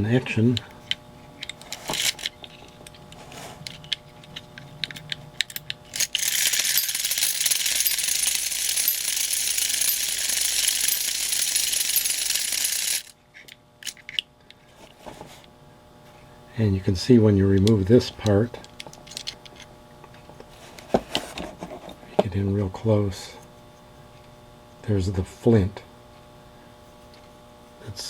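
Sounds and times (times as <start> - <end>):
clockwork motor whirring: 5.9 - 13.1.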